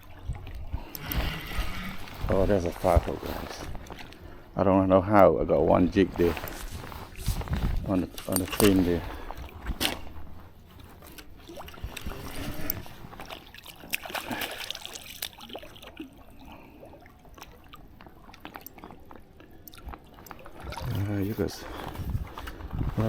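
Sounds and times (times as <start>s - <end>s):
water sloshing and dripping: 0.0s - 23.0s
fish splashing in water: 11.2s - 21.0s.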